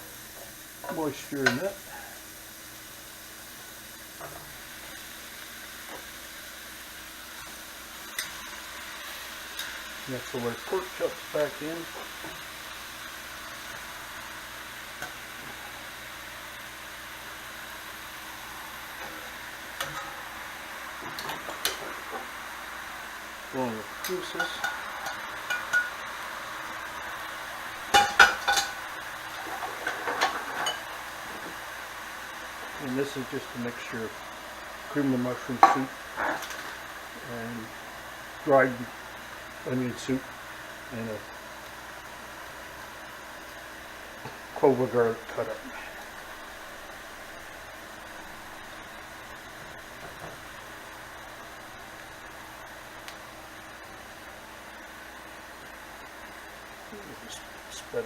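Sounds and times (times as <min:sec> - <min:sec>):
onions sizzling in a pan: 0:00.0 - 0:58.0
utensils clinking on cast iron: 0:01.4 - 0:01.7, 0:08.1 - 0:08.6, 0:09.4 - 0:09.9, 0:19.0 - 0:20.4, 0:24.0 - 0:26.0, 0:27.9 - 0:28.8, 0:29.4 - 0:30.9, 0:35.6 - 0:36.8.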